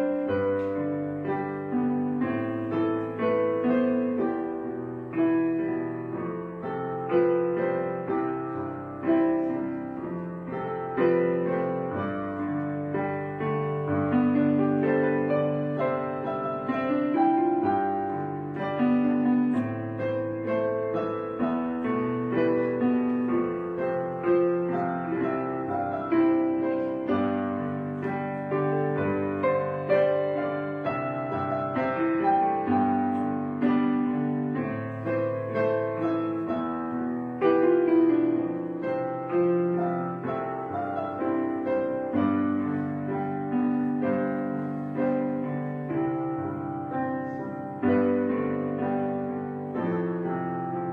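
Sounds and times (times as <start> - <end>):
gentle piano music: 0.0 - 50.9.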